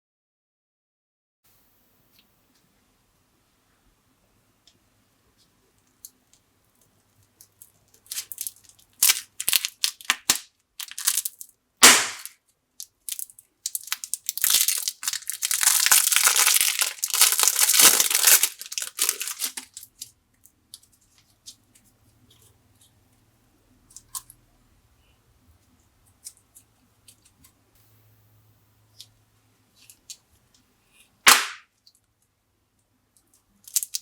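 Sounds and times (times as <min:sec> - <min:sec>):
plastic packaging crinkling: 0:07.3 - 0:11.6, 0:12.2 - 0:20.1, 0:33.6 - 0:34.0
sharp crack: 0:09.0 - 0:11.2, 0:11.8 - 0:12.4, 0:31.2 - 0:31.7.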